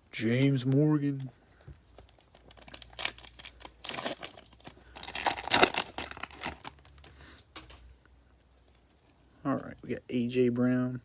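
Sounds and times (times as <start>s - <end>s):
wrapper crinkling and tearing: 2.0s - 7.1s.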